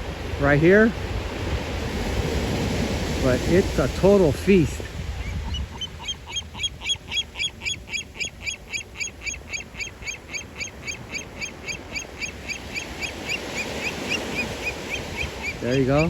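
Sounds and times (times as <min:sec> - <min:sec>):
seagull calling: 0:04.9 - 0:16.0.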